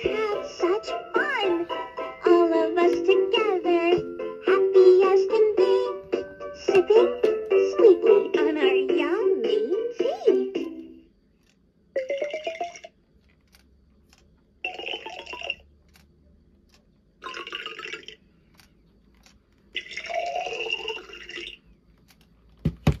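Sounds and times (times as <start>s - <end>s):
toy electronic sound effects: 14.6s - 15.6s.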